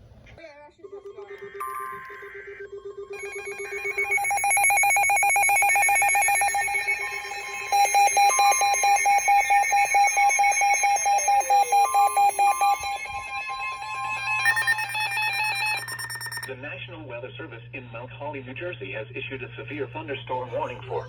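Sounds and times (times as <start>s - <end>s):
rapidly pulsing electronic beeps: 0.9s - 16.5s
steady low alert tone: 0.9s - 16.5s.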